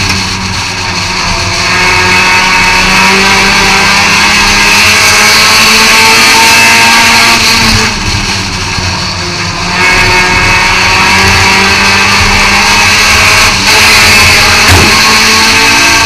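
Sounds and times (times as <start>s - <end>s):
race car engine under throttle: 0.0s - 16.0s.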